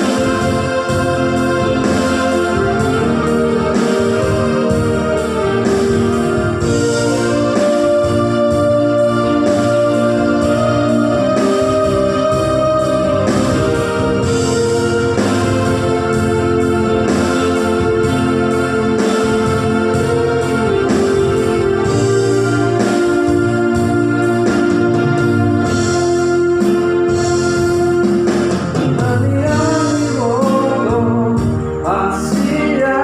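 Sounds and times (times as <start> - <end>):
accompaniment beat: 0.0 - 33.0
electronic keyboard organ chords: 0.0 - 33.0
person singing: 6.6 - 16.1, 28.8 - 33.0.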